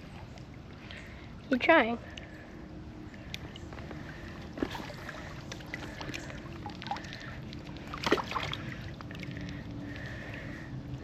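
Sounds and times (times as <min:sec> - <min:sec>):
river water splashing: 0:02.7 - 0:11.0.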